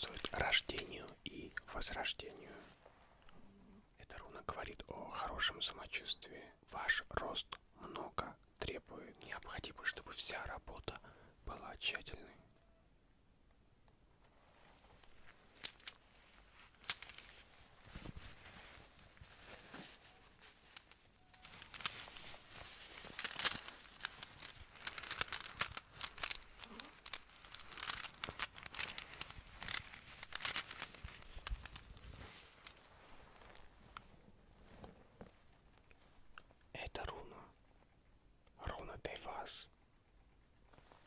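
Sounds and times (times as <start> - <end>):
crinkling and rustling: 0.0 - 3.4, 14.1 - 36.7, 40.7 - 41.0.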